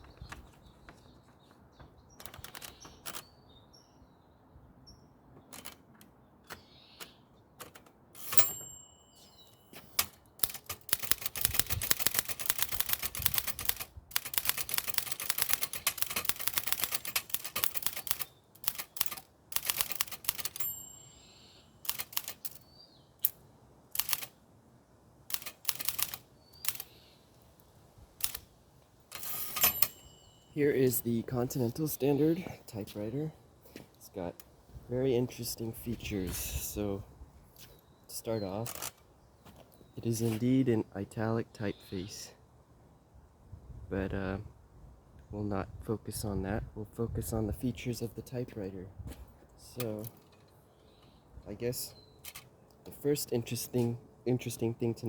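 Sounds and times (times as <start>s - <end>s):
typewriter carriage bell dinging: 8.2s - 22.6s, 25.3s - 26.8s, 29.1s - 31.4s
typewriter typing: 9.8s - 20.7s, 21.8s - 22.6s, 23.9s - 24.3s, 25.3s - 26.9s, 28.2s - 28.4s, 29.1s - 30.0s.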